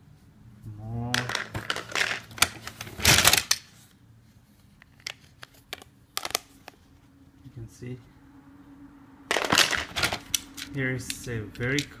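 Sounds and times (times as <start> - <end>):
plastic toy train clattering: 1.2 - 3.6.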